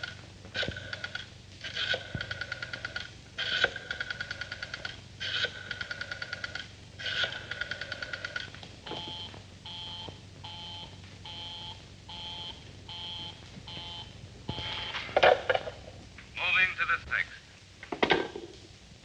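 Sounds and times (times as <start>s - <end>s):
telephone busy signal beeps: 8.9s - 15.2s.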